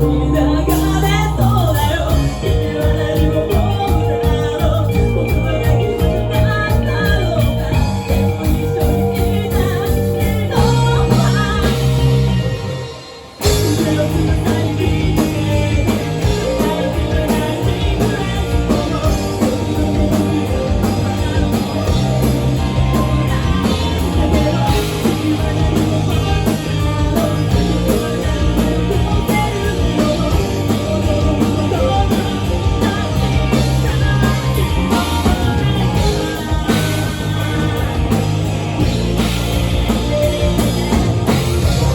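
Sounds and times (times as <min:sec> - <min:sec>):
person singing: 0:00.0 - 0:41.9
rock band playing live: 0:00.0 - 0:41.9.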